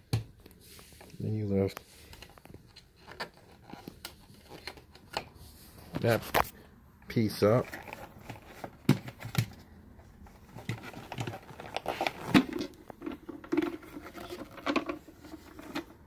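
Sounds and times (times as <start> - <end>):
plastic parts clicking and knocking: 2.1 - 5.3, 7.6 - 9.6, 10.3 - 16.0.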